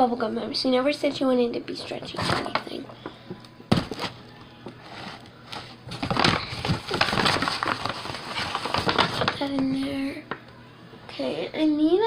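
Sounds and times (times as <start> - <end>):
packaging crinkling: 5.5 - 9.5.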